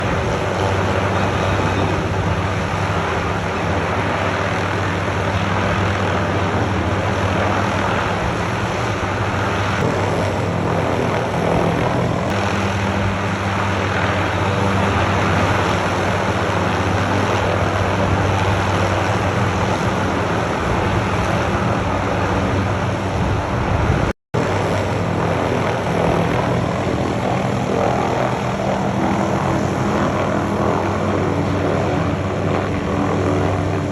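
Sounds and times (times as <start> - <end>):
helicopter rotor and engine hum: 0.0 - 33.9.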